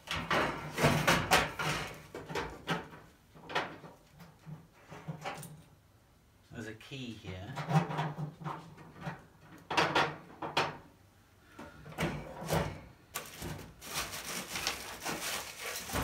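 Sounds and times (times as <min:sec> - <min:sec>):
packaging rustling: 0:13.1 - 0:16.0.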